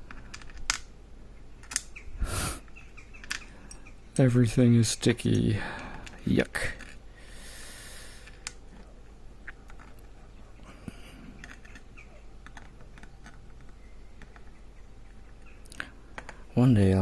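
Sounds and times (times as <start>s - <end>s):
small metal discs clicking: 0.0s - 0.9s, 1.6s - 2.0s, 2.7s - 3.9s, 5.1s - 7.0s, 8.2s - 10.1s, 10.9s - 16.6s.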